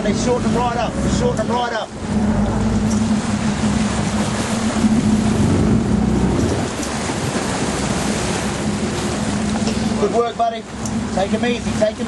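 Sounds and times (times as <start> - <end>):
boat engine humming: 0.0 - 12.0
water noise: 0.0 - 12.0
wind: 0.0 - 12.0.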